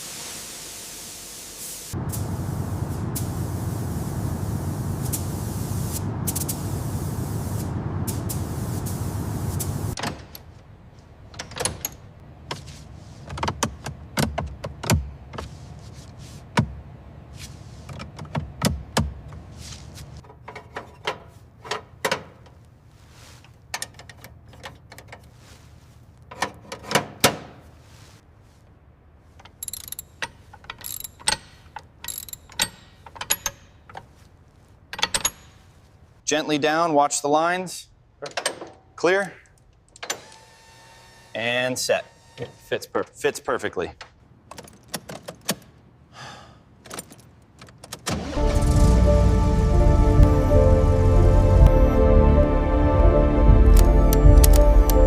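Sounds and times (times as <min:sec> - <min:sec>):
loud rushing hiss: 0:00.0 - 0:10.0
metallic clicks and clanks: 0:29.4 - 0:34.1, 0:34.9 - 0:35.6.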